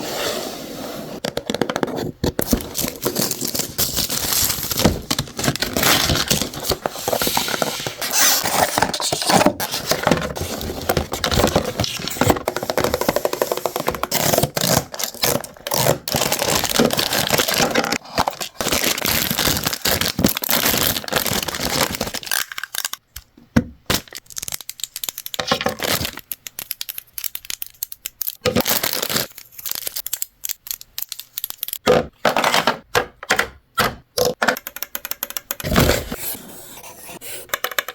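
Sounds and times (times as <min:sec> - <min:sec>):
packaging tearing and crinkling: 0:02.4 - 0:12.4, 0:14.1 - 0:23.0, 0:23.9 - 0:31.8.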